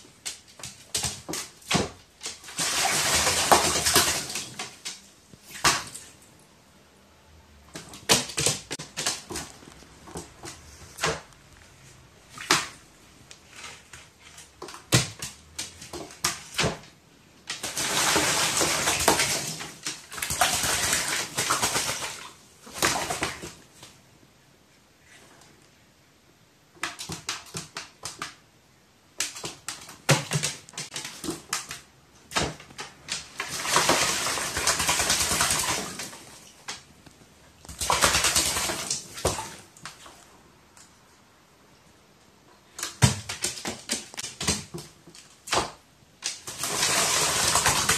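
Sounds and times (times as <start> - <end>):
bird wings splashing water: 0.6 - 6.1, 17.5 - 23.6, 32.4 - 36.5, 37.7 - 39.6, 45.5 - 47.9.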